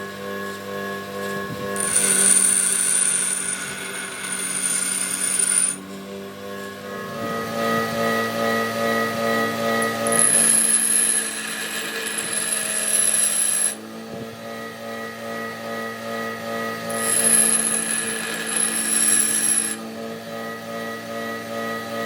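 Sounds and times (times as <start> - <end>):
metal cutting scrape: 1.2 - 6.8, 9.8 - 14.2, 16.8 - 19.9
power tool motor humming: 1.2 - 14.6, 16.8 - 20.5.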